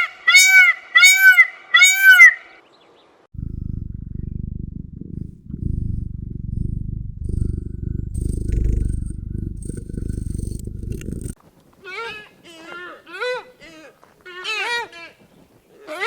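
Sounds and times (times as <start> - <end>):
loud honking calls: 0.0 - 2.4
low pulsing animal rumble: 3.3 - 11.4.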